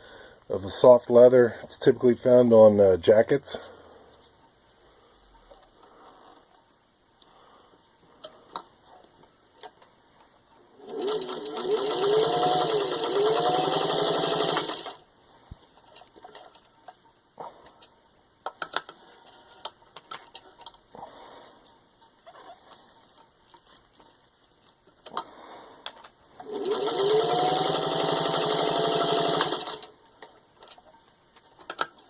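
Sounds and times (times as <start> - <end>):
sewing machine stitching: 10.7 - 15.0, 26.4 - 29.9.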